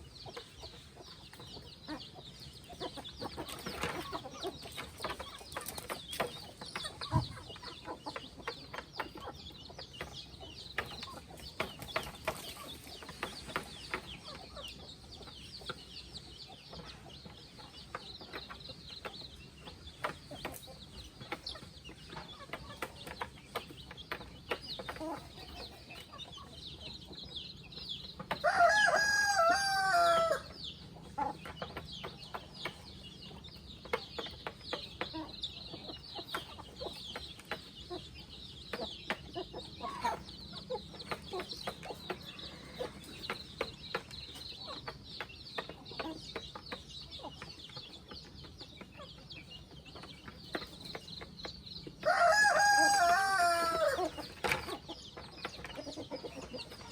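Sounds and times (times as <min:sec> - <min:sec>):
chickens clucking: 0:00.0 - 0:56.9
rooster crowing: 0:28.4 - 0:30.5, 0:52.0 - 0:54.1.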